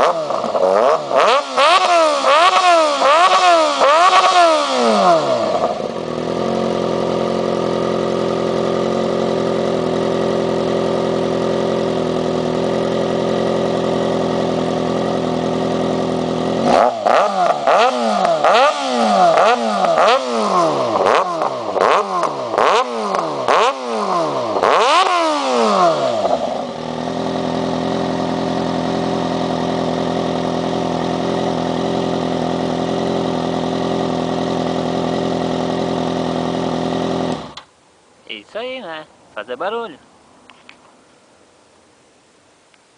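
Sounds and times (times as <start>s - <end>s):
motorcycle engine idling and revving: 0.0s - 37.7s.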